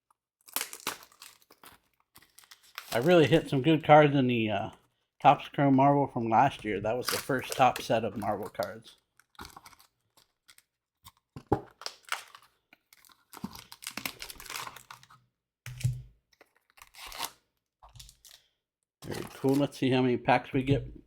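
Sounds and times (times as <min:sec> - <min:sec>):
cardboard and packaging tearing: 0:00.4 - 0:03.4, 0:07.0 - 0:15.1, 0:16.5 - 0:17.4, 0:19.0 - 0:19.7.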